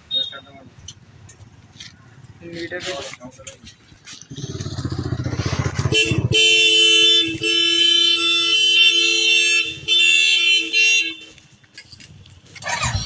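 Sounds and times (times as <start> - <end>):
motorcycle engine running: 4.2 - 8.7
motorcycle horn blasts: 5.8 - 11.4.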